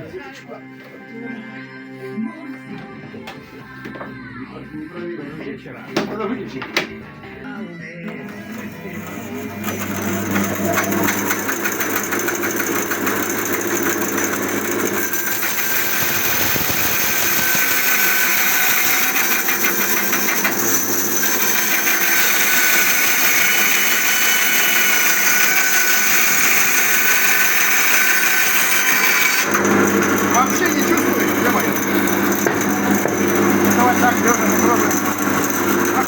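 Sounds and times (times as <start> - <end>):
band sawmill sawing log: 8.3 - 36.0.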